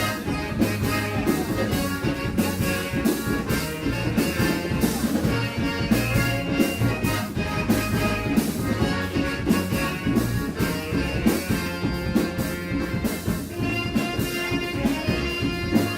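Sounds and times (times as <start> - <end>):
band playing up-tempo song: 0.0 - 15.9.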